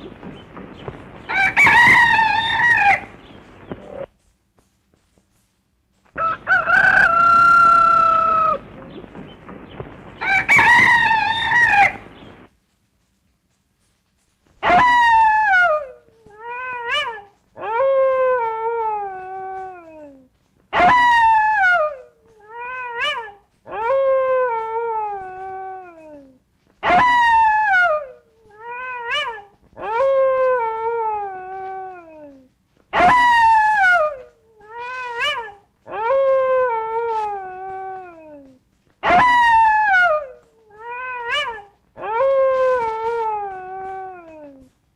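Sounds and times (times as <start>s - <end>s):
dog howling: 14.6s - 44.8s.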